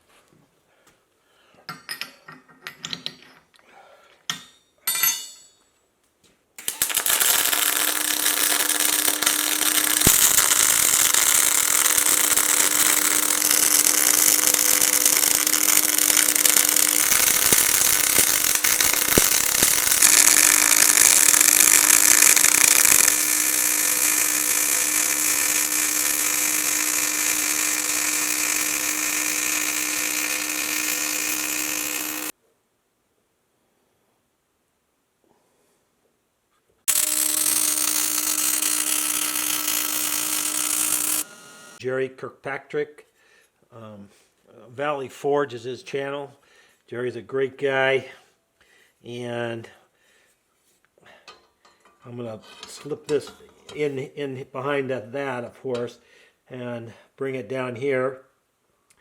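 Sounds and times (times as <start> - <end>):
electric power tool running: 6.6 - 32.3, 36.9 - 41.8.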